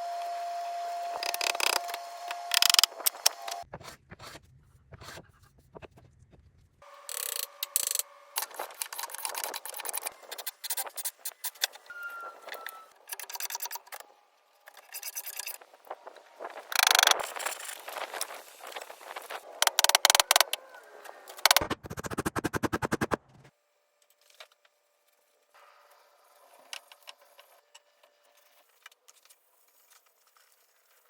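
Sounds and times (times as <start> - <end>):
wood and tools scraping and clicking: 1.1 - 4.4, 7.1 - 15.7, 16.6 - 19.0, 19.6 - 20.6, 21.3 - 23.1.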